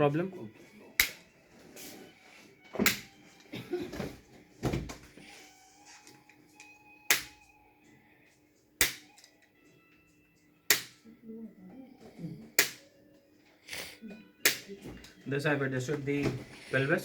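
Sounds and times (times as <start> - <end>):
chiropractic instrument clicks: 1.0 - 1.2, 7.1 - 7.4, 10.7 - 11.0, 12.6 - 12.8, 14.4 - 14.7.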